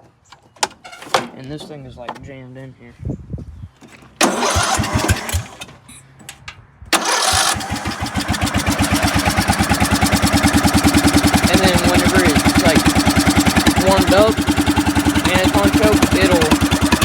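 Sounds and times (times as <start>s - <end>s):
electric starter cranking: 4.2s - 5.9s, 7.0s - 17.0s
lawn mower engine running: 4.2s - 5.9s, 7.0s - 17.0s.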